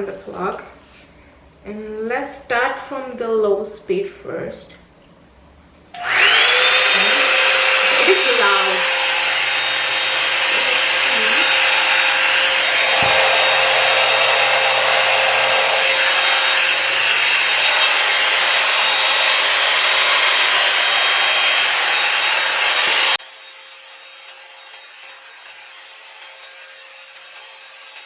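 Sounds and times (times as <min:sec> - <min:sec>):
hair dryer brush blowing air: 0:06.0 - 0:23.4.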